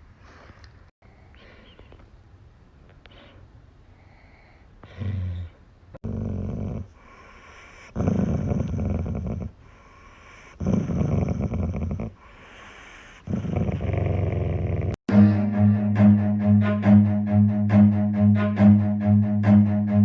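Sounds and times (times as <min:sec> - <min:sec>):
dog rasping breaths: 0:06.0 - 0:14.6.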